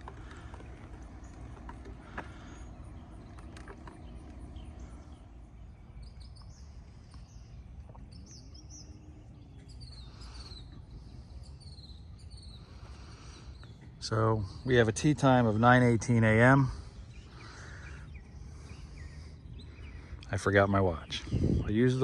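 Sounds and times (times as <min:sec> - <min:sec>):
low outdoor rumble: 0:00.0 - 0:22.0
songbirds chirping: 0:00.0 - 0:22.0.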